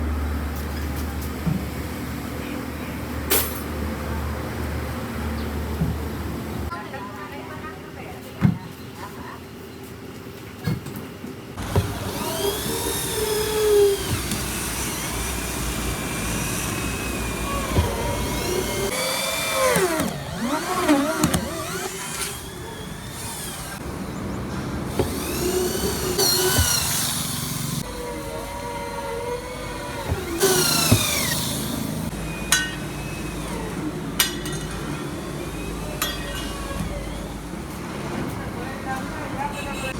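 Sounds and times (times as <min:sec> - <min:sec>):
motor whine rising and falling: 0:11.6 - 0:23.8, 0:24.9 - 0:33.9.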